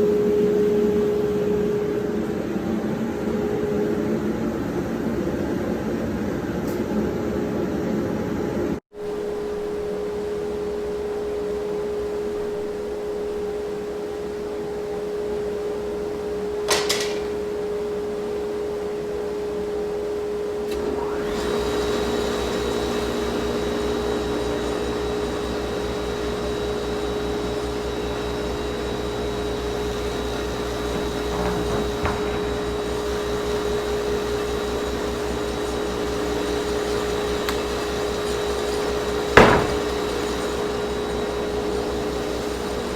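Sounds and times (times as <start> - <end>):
high whine: 0.0 - 6.0, 9.0 - 42.9
table saw and dust extractor running: 20.7 - 42.9.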